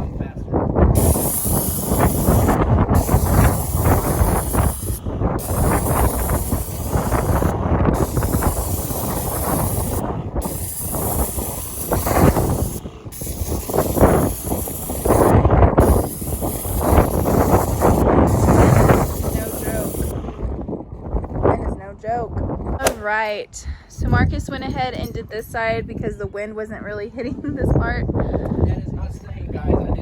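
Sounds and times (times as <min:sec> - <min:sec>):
wind rumble on microphone: 0:00.0 - 0:30.0
paint sprayer hissing: 0:00.9 - 0:20.6.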